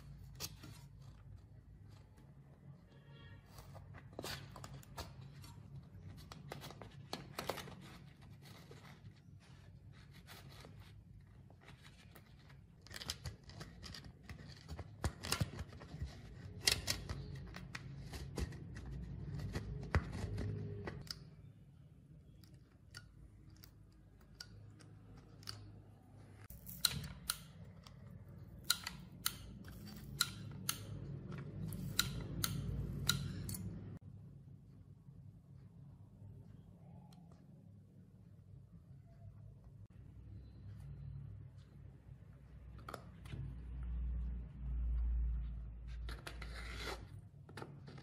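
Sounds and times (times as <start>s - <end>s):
hand tool clicks and snips: 28.6s - 33.8s.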